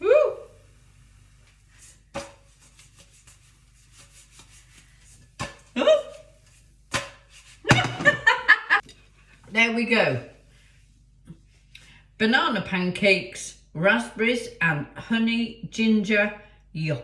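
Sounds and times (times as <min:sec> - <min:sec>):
spoon scraping a plate: 0:01.7 - 0:07.8.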